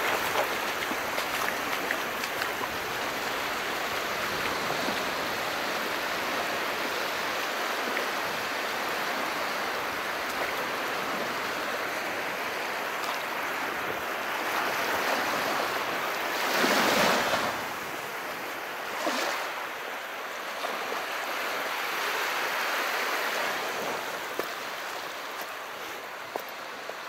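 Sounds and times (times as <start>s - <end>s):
small waves washing in: 0.0s - 27.0s.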